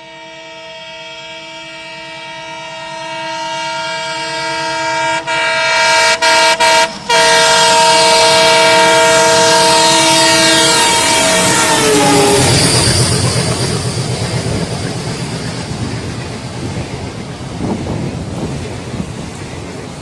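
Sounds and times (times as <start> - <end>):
locomotive horn blast: 0.0 - 14.8
rush of running train: 0.0 - 20.0.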